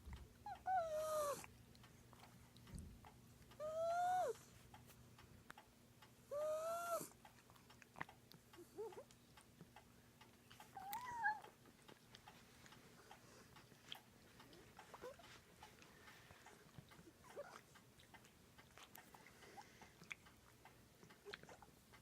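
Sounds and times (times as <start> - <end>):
cat making high-pitched cries: 10.8 - 11.5.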